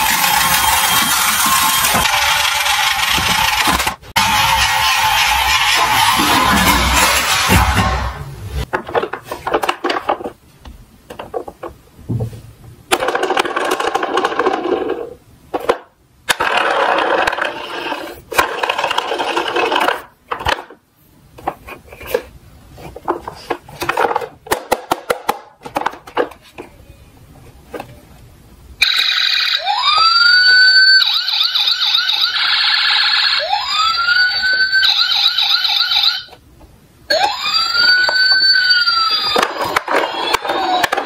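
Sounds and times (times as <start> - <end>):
toy cars rattling down track: 0.0 - 8.0, 16.3 - 20.7, 37.2 - 41.0.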